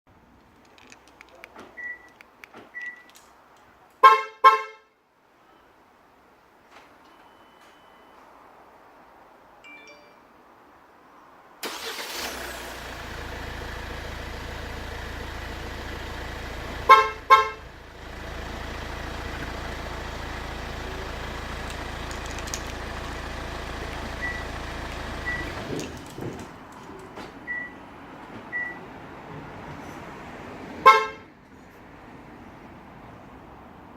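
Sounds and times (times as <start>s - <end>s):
car horn toots: 4.0s - 4.9s, 16.8s - 17.7s, 30.8s - 31.3s
faint short beeps: 7.0s - 8.3s
car engine idling: 11.7s - 27.1s.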